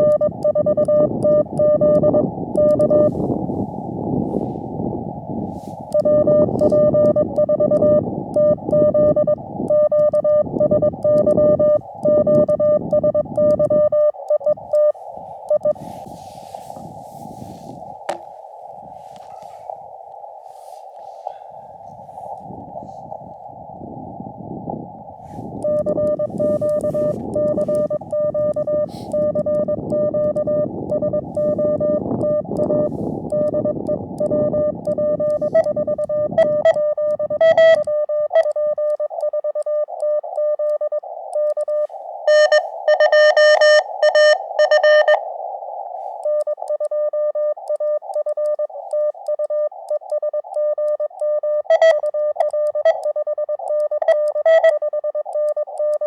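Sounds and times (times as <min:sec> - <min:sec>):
morse code tones: 0:00.0 - 0:18.2, 0:25.4 - 0:56.0
radio receiver hiss: 0:01.4 - 0:07.4, 0:11.2 - 0:29.9, 0:30.6 - 0:36.3.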